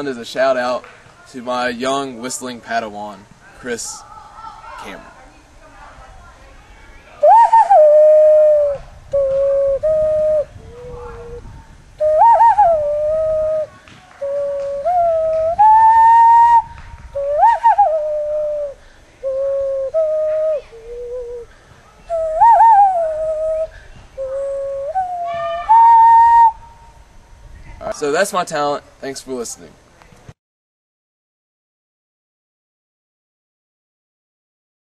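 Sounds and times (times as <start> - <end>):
hand whistling a tune: 7.2 - 11.4, 12.0 - 21.5, 22.1 - 26.6.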